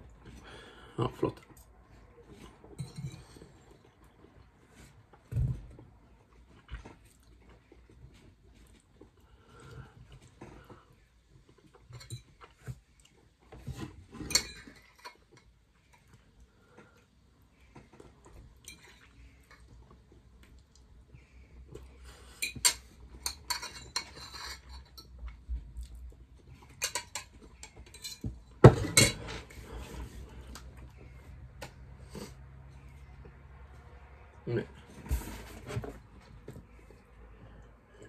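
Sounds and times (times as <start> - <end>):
cutlery clinking on a plate: 22.4 - 25.2, 26.7 - 29.5.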